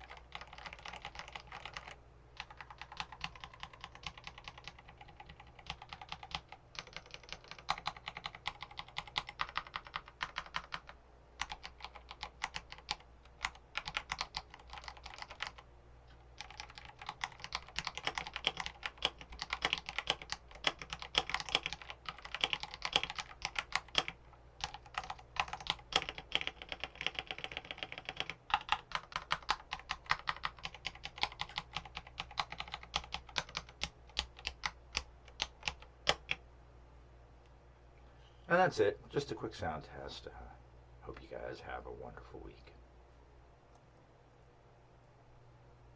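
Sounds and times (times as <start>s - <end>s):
mechanical keyboard typing: 0.0s - 15.6s, 16.4s - 36.4s.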